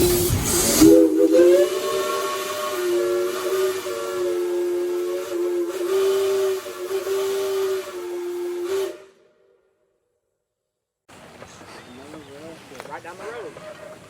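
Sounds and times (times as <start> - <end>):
steam hiss: 0.0 - 9.2
steam whistle chord: 0.0 - 9.8.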